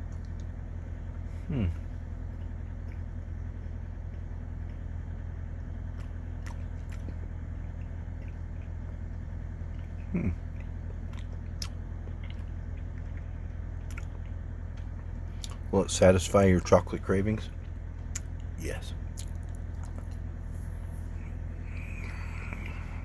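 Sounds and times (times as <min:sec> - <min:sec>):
steady low hum: 0:00.0 - 0:23.0
person chewing: 0:01.3 - 0:04.9, 0:05.7 - 0:15.7, 0:17.5 - 0:23.0
person humming: 0:01.4 - 0:01.9, 0:10.0 - 0:10.4, 0:21.5 - 0:23.0.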